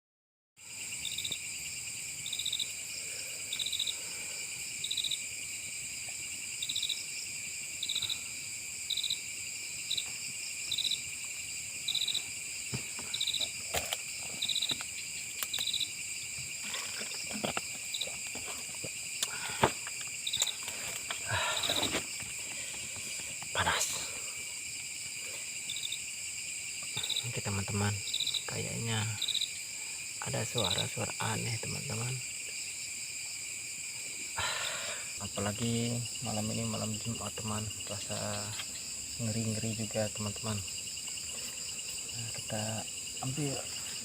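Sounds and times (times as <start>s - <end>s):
insects trilling: 0.6s - 44.0s
pulsed insect chirp: 0.6s - 44.0s
knocks and rustles: 16.4s - 19.0s.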